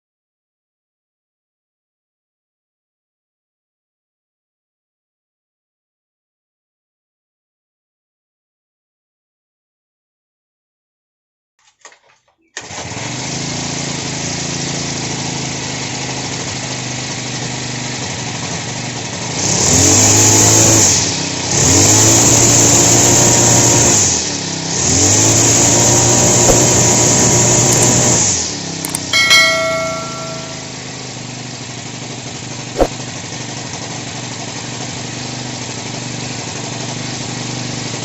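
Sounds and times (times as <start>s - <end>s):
high-pitched ringing tone: 29.0s - 30.8s.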